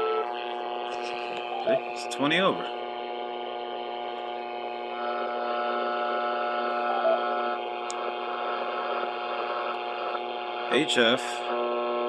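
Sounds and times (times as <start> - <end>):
buzz of stacked tones: 0.0 - 12.0
radio interference hiss: 0.0 - 12.0
higher tone: 0.9 - 2.2, 6.6 - 7.6.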